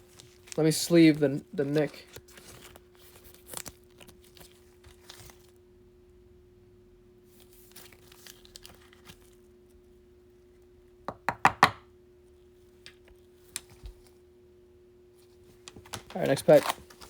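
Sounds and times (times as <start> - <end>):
plastic card sleeves rustling: 0.0 - 5.6, 15.8 - 17.0
faint steady hum: 0.0 - 17.0.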